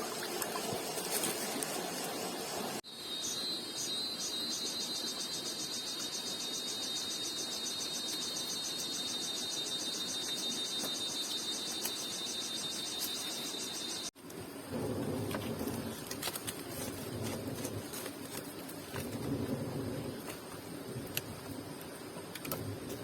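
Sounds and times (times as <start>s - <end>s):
outdoor background hiss: 0.0s - 23.0s
insect chirping trill: 0.9s - 15.0s.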